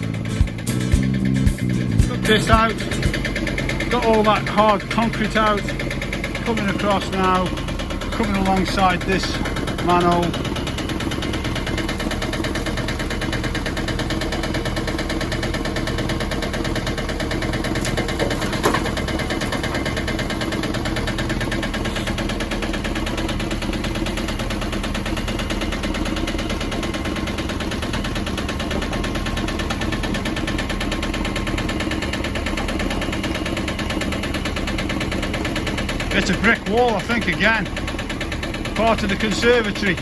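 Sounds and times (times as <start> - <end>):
sharp knocks: 0.0 - 23.9
excavator diesel engine running: 0.0 - 40.0.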